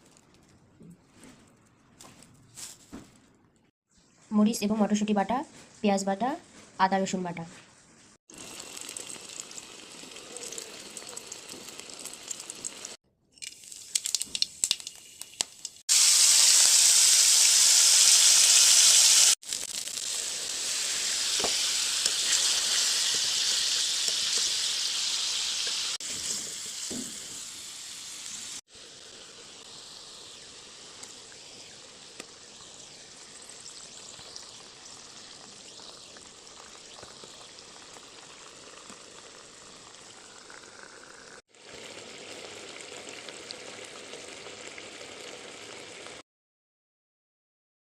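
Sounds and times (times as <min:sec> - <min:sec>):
food frying in hot oil: 0:08.3 - 0:46.2.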